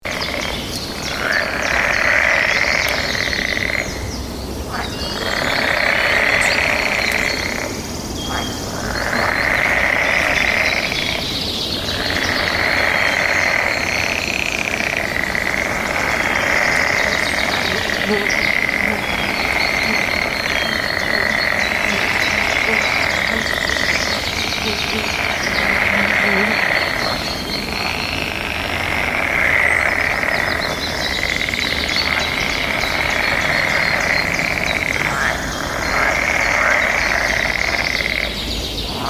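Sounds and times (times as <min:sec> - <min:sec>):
chorus of frogs calling: 0:00.0 - 0:39.0
faint bird chirps: 0:15.0 - 0:28.0.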